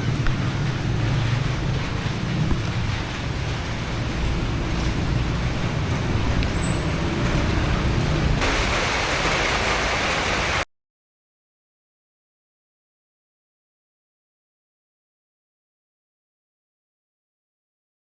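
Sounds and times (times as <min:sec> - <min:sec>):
heavy rain hissing: 0:00.0 - 0:10.6.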